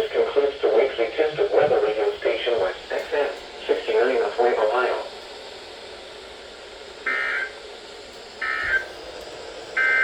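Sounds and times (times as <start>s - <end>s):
steady radio static: 0.1s - 5.1s.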